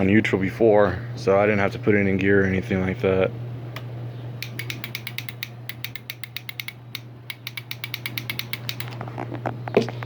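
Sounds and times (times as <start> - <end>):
starter relay clicking rapidly: 4.4 - 9.0.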